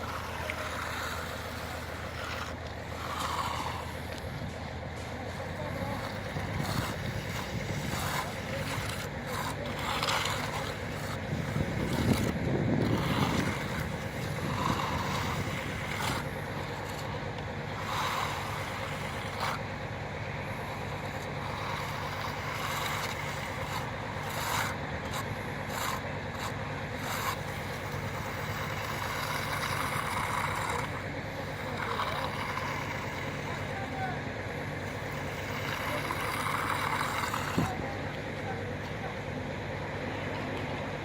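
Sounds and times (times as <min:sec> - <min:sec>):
engine running: 0:00.0 - 0:41.0.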